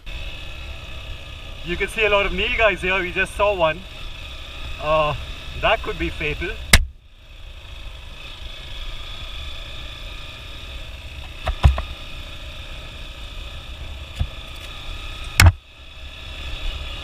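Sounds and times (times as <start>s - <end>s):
motorcycle engine steady note: 0.0s - 17.0s
sharp knocks: 15.4s - 15.6s.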